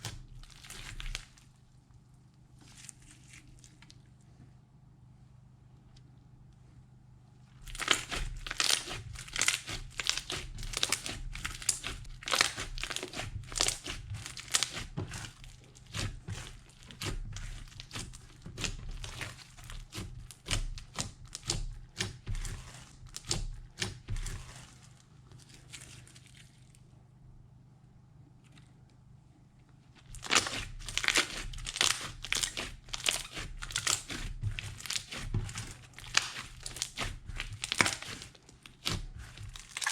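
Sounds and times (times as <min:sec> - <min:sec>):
slime squished by hand crackling: 0:07.6 - 0:24.7, 0:30.0 - 0:39.9.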